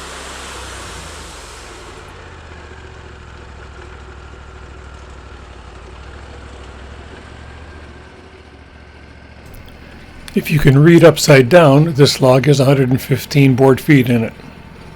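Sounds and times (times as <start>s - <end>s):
engine idling: 0.0s - 14.9s.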